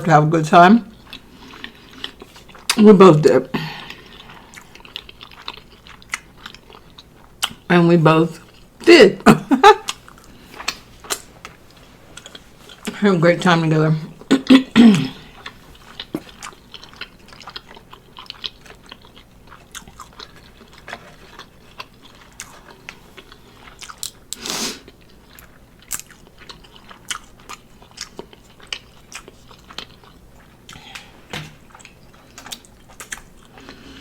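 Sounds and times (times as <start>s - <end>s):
person chewing and biting: 1.0s - 2.8s, 3.8s - 7.6s, 15.2s - 33.9s.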